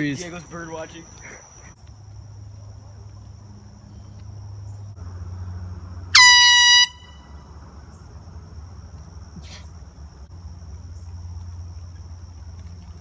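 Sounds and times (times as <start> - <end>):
air horn blast: 6.1 - 7.2.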